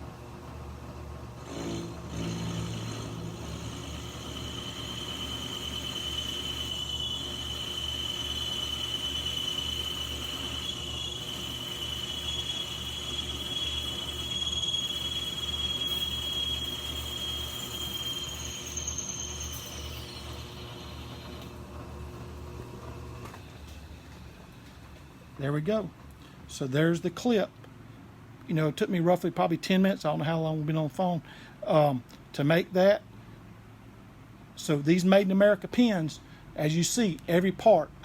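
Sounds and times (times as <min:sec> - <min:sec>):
lathe motor hum: 0:01.2 - 0:25.4
lathe tool squealing: 0:01.4 - 0:21.7.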